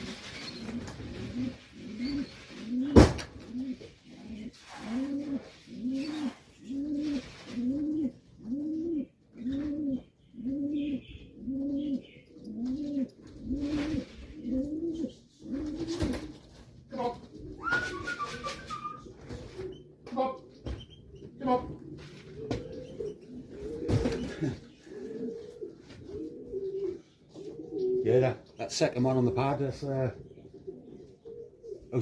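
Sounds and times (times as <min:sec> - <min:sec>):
pigeon cooing: 0:00.0 - 0:32.0.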